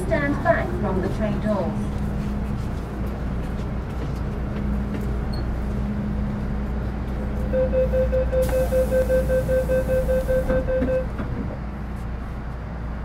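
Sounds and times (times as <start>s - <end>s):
electric train humming: 0.0s - 11.3s
rapid high warning beeps: 7.6s - 11.1s.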